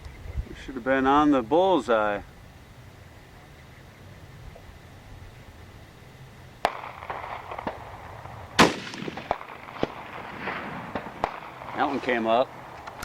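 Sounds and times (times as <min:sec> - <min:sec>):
rifle shot with echo: 0:06.6 - 0:12.4
sharp light crack: 0:08.6 - 0:10.1.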